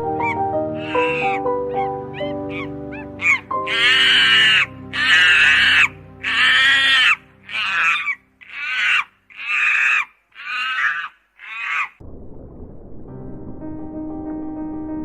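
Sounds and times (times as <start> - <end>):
background music: 0.0 - 9.1, 13.2 - 15.0
animal high-pitched calls: 0.2 - 12.0.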